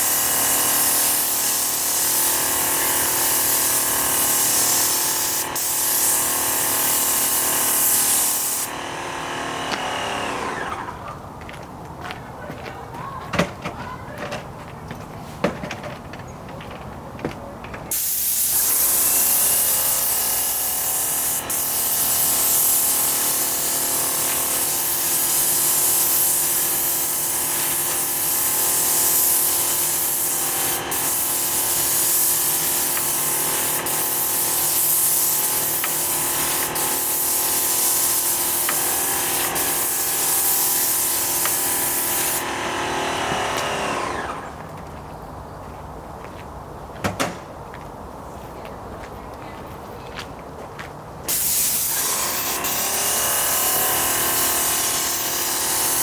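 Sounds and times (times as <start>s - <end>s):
paint spray hissing: 0.0s - 8.7s, 17.9s - 42.4s, 51.3s - 56.0s
sprayer motor humming: 17.9s - 44.6s, 51.3s - 56.0s.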